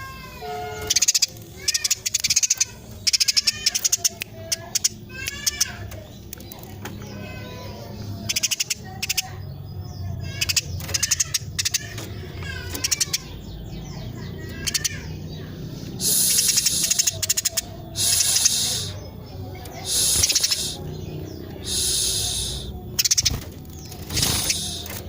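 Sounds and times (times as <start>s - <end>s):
sparrow chirping: 0.0s - 25.0s
bird hissing burst: 16.0s - 17.2s, 17.9s - 19.0s, 19.8s - 20.9s, 21.6s - 22.8s, 24.2s - 24.9s.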